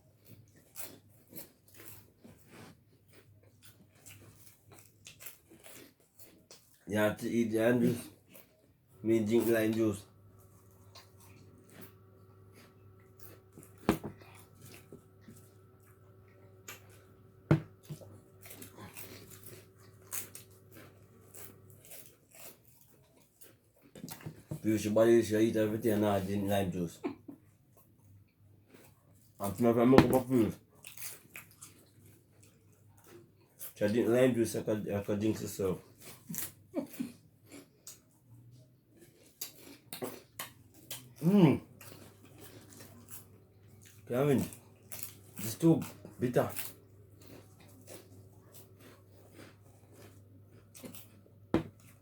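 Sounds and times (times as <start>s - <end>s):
chewing and mouth noises: 0.0s - 24.8s, 27.4s - 34.2s, 35.8s - 52.0s.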